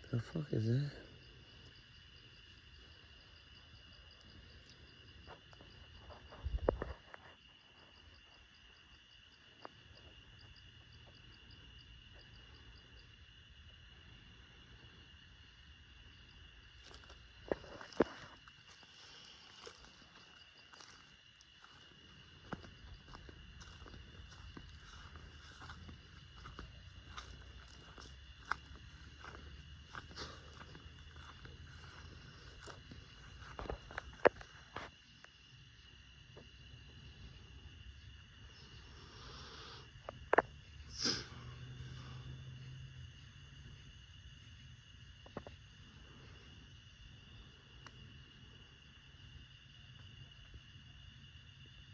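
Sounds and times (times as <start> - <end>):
crickets chirping: 0.0 - 51.9
steady low rumble: 20.7 - 34.4.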